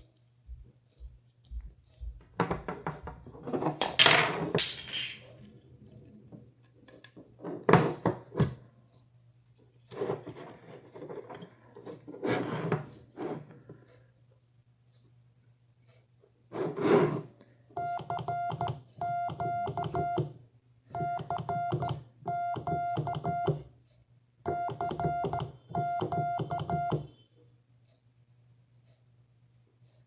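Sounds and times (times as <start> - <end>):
morse code beeps: 17.8 - 20.3, 21.0 - 23.6, 24.5 - 27.1.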